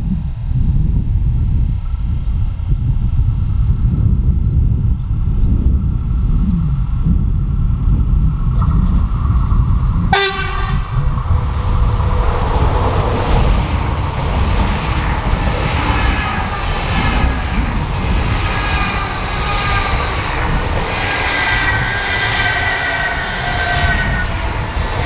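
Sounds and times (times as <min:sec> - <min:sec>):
train rushing past: 0:07.6 - 0:25.0
train horn blast: 0:10.1 - 0:25.0.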